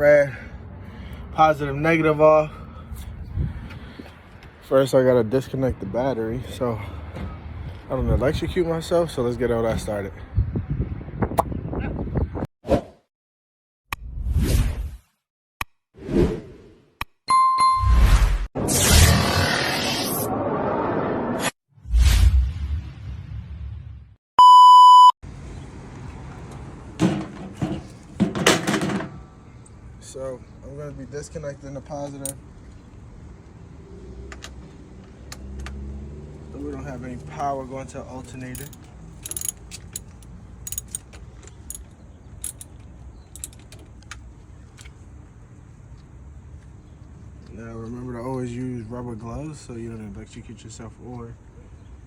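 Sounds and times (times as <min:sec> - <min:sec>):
electronic bleep tone: 0:17.3 - 0:18.0, 0:24.4 - 0:25.2
hand tool clicking on metal: 0:38.5 - 0:42.7.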